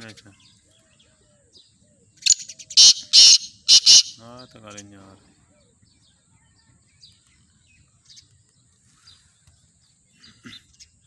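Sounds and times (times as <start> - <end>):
faint bird chirps: 0.0 - 4.2.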